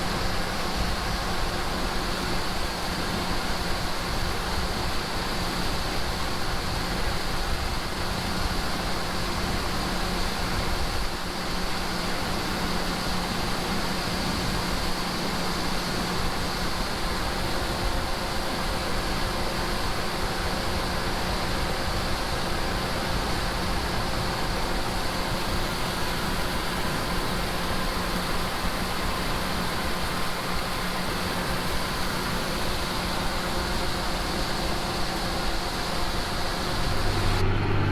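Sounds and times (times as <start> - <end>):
tractor engine running: 31.2 - 37.9.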